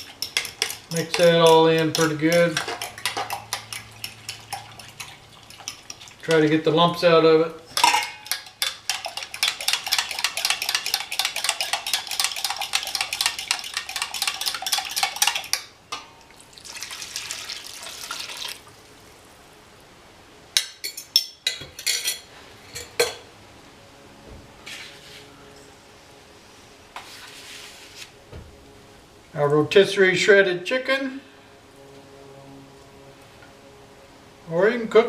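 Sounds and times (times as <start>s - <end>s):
utensil scraping in a pot: 0.0s - 7.0s, 7.8s - 15.7s, 24.6s - 25.4s, 26.9s - 28.2s.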